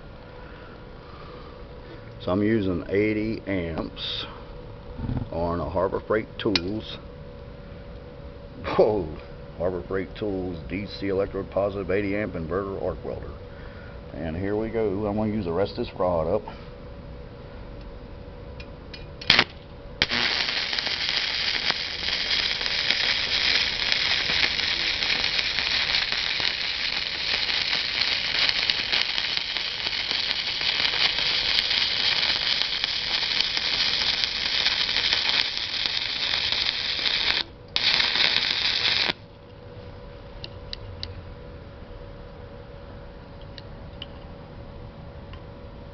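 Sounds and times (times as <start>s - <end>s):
welding arc crackling hiss: 19.2s - 39.2s.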